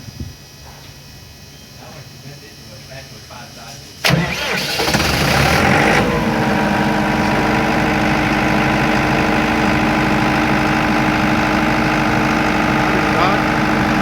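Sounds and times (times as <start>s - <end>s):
diesel generator engine running: 4.0s - 14.0s.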